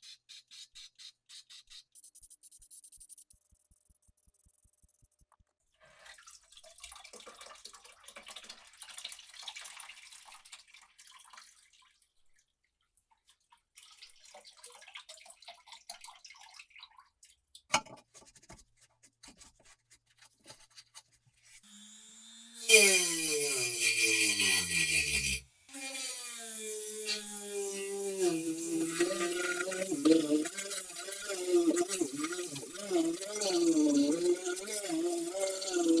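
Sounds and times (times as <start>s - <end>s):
wet brush scrubbing: 22.7s - 36.0s.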